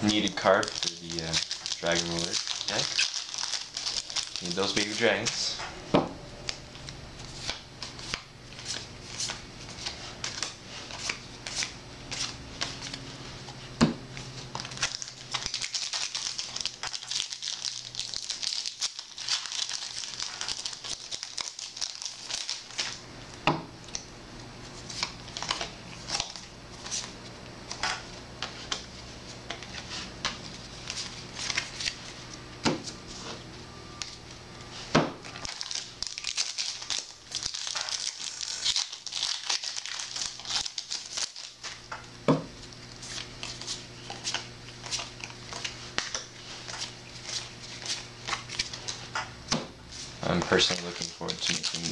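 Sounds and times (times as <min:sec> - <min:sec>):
foil wrappers crinkling and tearing: 0:00.1 - 0:05.6, 0:14.3 - 0:23.0, 0:24.8 - 0:27.8, 0:29.5 - 0:32.2, 0:35.2 - 0:41.9, 0:42.6 - 0:49.1, 0:49.9 - 0:51.9.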